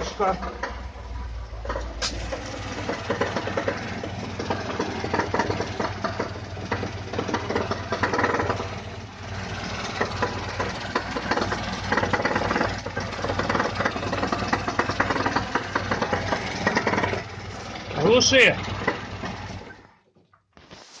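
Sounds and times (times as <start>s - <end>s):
rapid engine knocking: 0.0s - 19.8s
car engine running: 0.0s - 20.1s.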